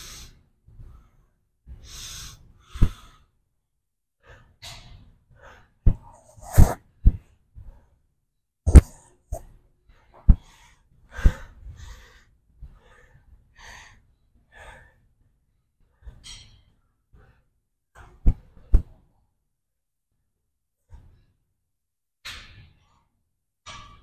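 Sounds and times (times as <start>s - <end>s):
man breathing hard: 1.8s - 3.4s, 10.3s - 15.1s.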